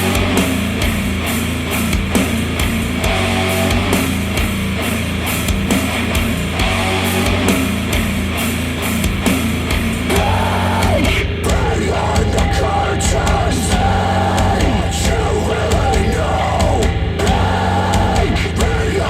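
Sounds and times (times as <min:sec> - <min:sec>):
loud rock music over speakers: 0:00.0 - 0:19.0
person singing: 0:10.1 - 0:19.0.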